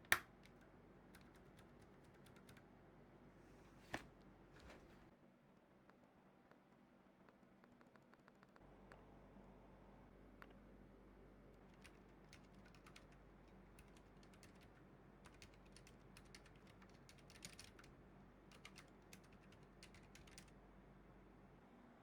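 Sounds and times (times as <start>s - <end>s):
mechanical keyboard typing: 0.0s - 2.6s, 11.6s - 17.9s, 18.5s - 20.6s.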